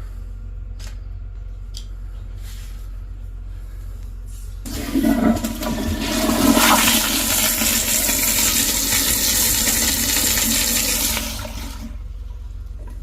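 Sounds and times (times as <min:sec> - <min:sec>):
toilet flushing: 0:04.6 - 0:12.1.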